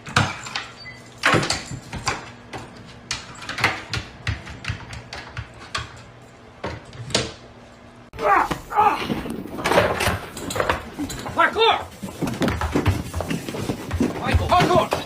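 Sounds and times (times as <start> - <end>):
irregular knocks and bumps: 9.6 - 15.0.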